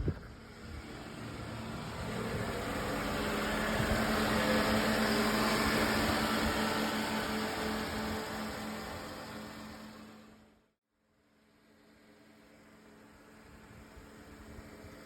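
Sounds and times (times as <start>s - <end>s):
car engine idling: 0.0s - 10.5s.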